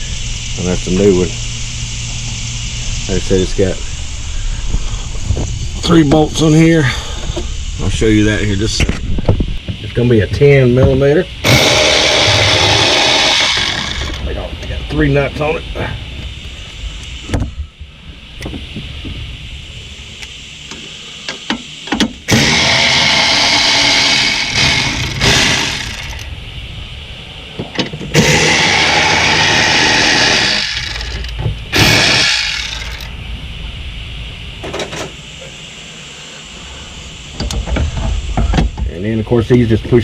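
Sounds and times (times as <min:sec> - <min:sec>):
power tool running: 0:11.4 - 0:14.4, 0:22.3 - 0:26.3, 0:28.1 - 0:33.1.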